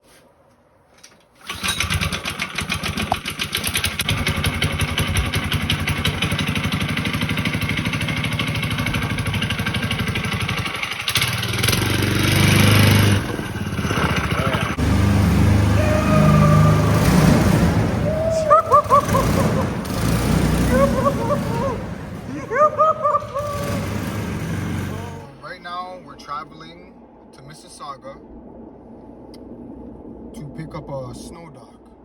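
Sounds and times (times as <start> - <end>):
small engine running: 1.5 - 25.3.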